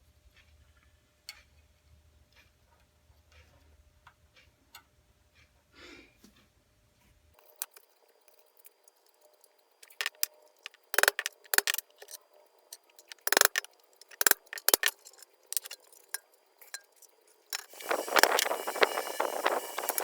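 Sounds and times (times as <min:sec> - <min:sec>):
metal parts clinking on toolbox: 0:09.8 - 0:16.9.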